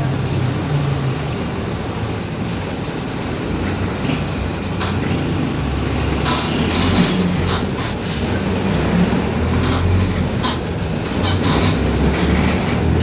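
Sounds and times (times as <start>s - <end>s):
bus diesel engine running: 0.0s - 13.0s
road and body noise: 0.0s - 13.0s.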